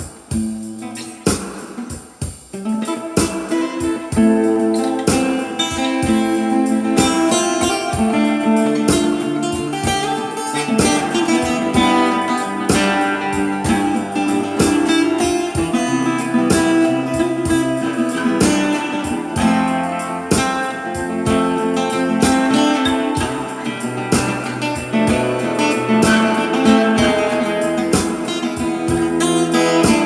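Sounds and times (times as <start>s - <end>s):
guitar plucked notes and chords: 0.0s - 30.0s.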